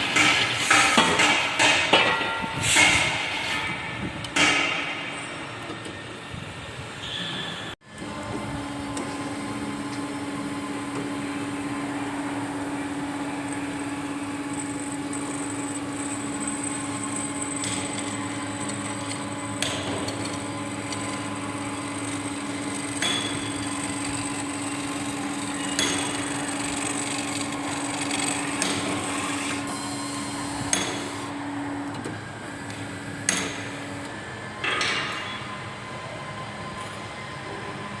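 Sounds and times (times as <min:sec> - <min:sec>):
band saw humming: 0:07.8 - 0:38.0.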